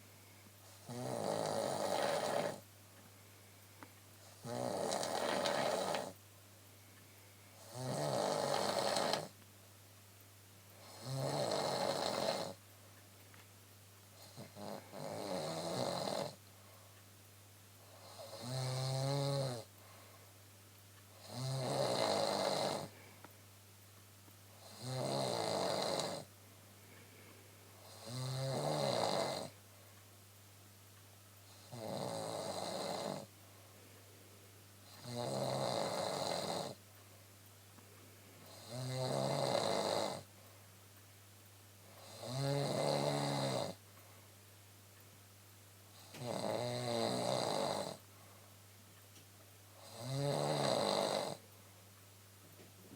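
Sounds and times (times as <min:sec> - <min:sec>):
woman snoring: 0:00.7 - 0:02.6, 0:04.3 - 0:06.2, 0:07.6 - 0:09.3, 0:10.8 - 0:12.6, 0:14.2 - 0:16.4, 0:17.9 - 0:19.7, 0:21.2 - 0:22.9, 0:24.6 - 0:26.3, 0:27.8 - 0:29.5, 0:31.5 - 0:33.3, 0:34.9 - 0:36.8, 0:38.5 - 0:40.3, 0:42.0 - 0:43.8, 0:46.0 - 0:48.0, 0:49.8 - 0:51.4.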